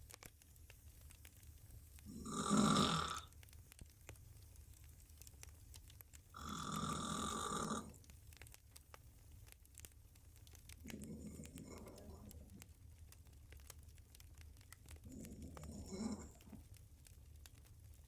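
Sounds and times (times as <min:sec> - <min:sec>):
woman snoring: 0:02.1 - 0:03.3, 0:06.4 - 0:07.9, 0:15.1 - 0:16.4.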